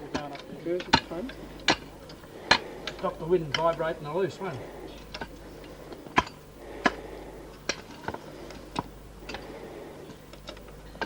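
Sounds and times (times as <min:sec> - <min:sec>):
hardware clicks and knocks: 0:00.0 - 0:03.9
faint steady hum: 0:00.0 - 0:11.0.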